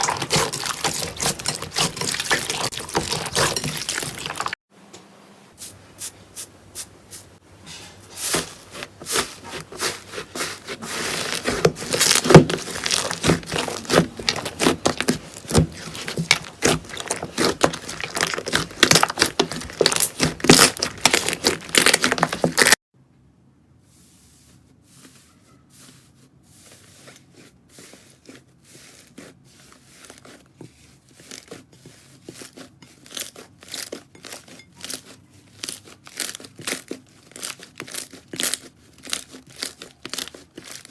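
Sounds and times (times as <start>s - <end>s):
slime crackling and popping: 10.9s - 22.8s, 34.8s - 40.9s.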